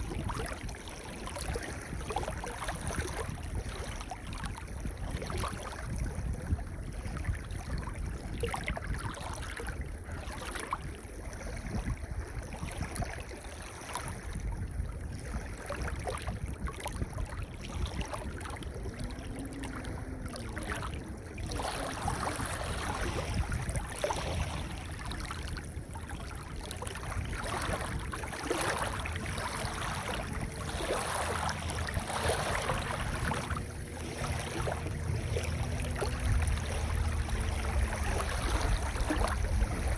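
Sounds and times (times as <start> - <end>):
waves washing over pebbles: 15.4 - 39.9
low rumble: 18.3 - 39.9.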